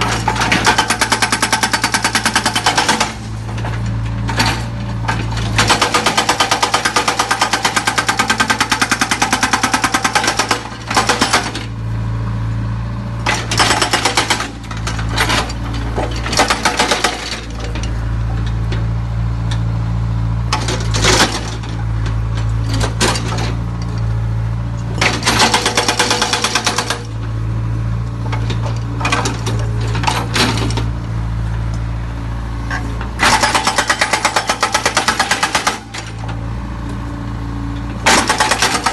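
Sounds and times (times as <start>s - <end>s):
diesel engine running: 0.0s - 38.9s
rapid mechanical hammering: 5.6s - 11.6s, 13.5s - 14.6s, 25.0s - 27.1s, 33.2s - 35.9s, 38.0s - 38.9s.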